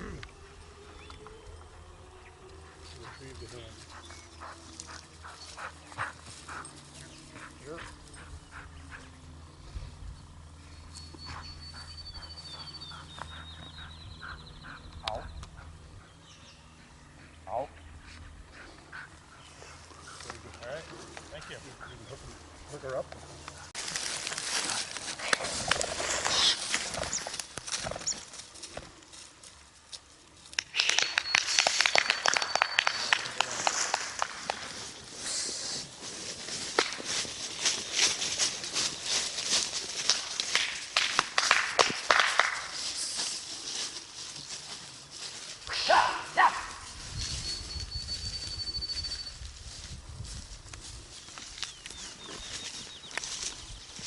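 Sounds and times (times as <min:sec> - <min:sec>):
low steady rumble: 0:00.0 - 0:26.3
footsteps crunching through vegetation: 0:19.5 - 0:30.2, 0:33.4 - 0:41.2, 0:41.8 - 0:54.0
thin high tone: 0:30.8 - 0:34.0.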